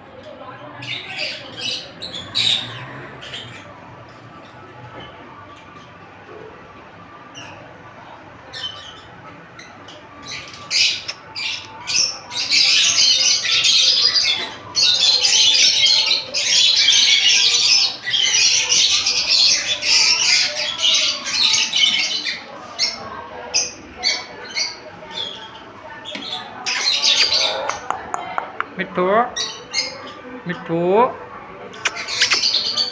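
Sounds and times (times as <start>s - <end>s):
parrot squawking: 31.8s - 32.9s.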